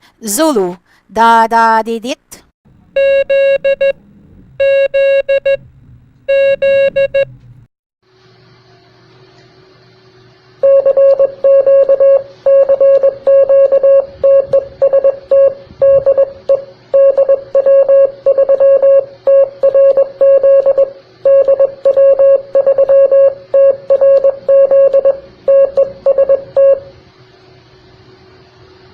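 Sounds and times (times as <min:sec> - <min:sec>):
morse code tone: 0:03.0 - 0:04.0, 0:04.6 - 0:05.7, 0:06.3 - 0:07.3, 0:10.6 - 0:26.9
faint steady hum: 0:08.6 - 0:28.9.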